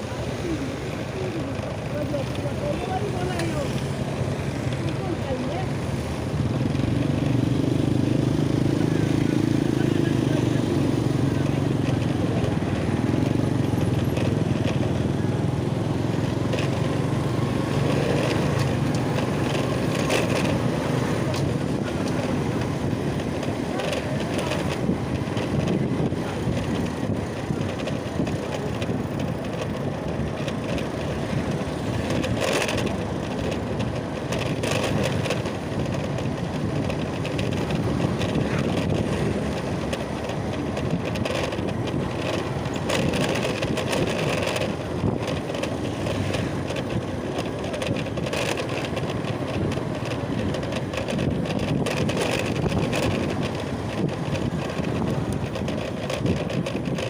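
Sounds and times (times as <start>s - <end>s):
vehicle rumble: 0.0s - 57.0s
wind noise: 5.9s - 57.0s.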